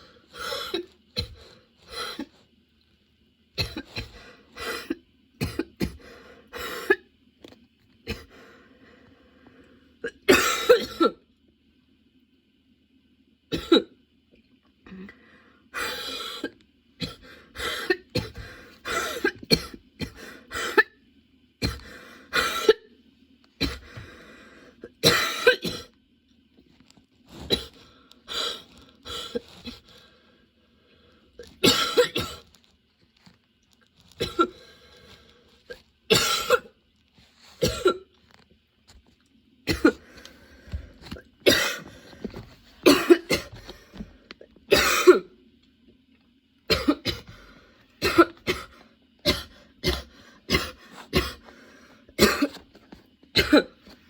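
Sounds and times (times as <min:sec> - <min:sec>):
woman coughing: 0:03.6 - 0:06.0, 0:10.1 - 0:11.2, 0:13.5 - 0:13.9, 0:16.0 - 0:20.9, 0:25.0 - 0:25.9, 0:31.6 - 0:32.4, 0:34.2 - 0:34.6, 0:36.1 - 0:36.8, 0:37.6 - 0:38.1, 0:39.7 - 0:40.0, 0:41.4 - 0:41.9, 0:42.8 - 0:43.6, 0:44.7 - 0:45.3, 0:46.7 - 0:47.3, 0:48.0 - 0:51.5, 0:52.2 - 0:52.6, 0:53.3 - 0:53.8.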